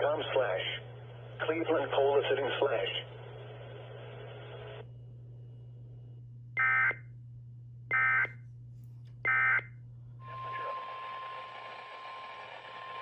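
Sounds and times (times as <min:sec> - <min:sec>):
broadcast static hiss: 0:00.0 - 0:04.8
low hum: 0:00.0 - 0:13.0.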